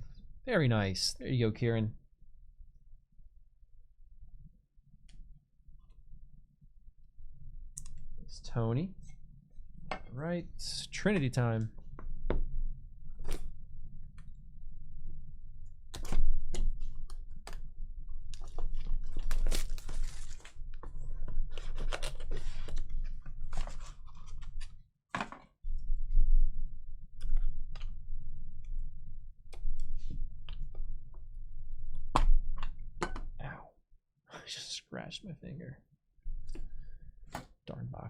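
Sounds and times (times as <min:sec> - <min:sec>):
cardboard tearing and crackling: 0:18.4 - 0:20.6.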